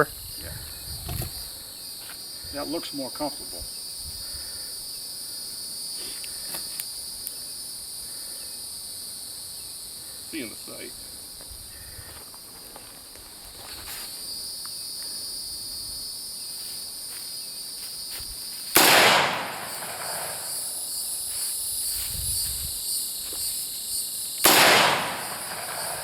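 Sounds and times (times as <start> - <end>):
insects chirring: 0.0 - 26.0
rifle shots: 18.8 - 20.8, 24.4 - 26.0.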